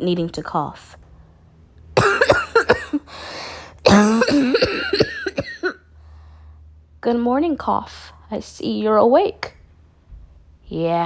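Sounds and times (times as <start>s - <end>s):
woman coughing: 2.0s - 5.8s
raspy breath in: 3.1s - 3.8s.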